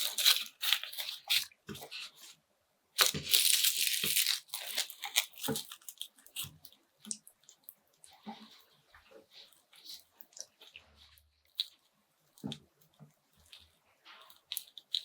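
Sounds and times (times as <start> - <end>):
crunching and crackling food: 0.0 - 15.0
wet chewing sounds: 9.4 - 15.0.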